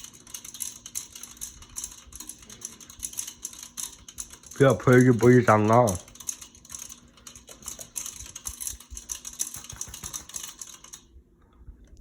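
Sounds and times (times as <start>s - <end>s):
ceiling fan motor clicking and rubbing: 0.0s - 12.0s
faint steady hum: 0.0s - 12.0s.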